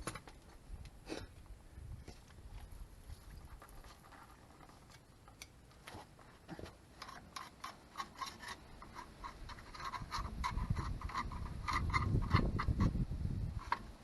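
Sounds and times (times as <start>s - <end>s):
scrubbing strokes on brake drum: 5.8s - 13.0s.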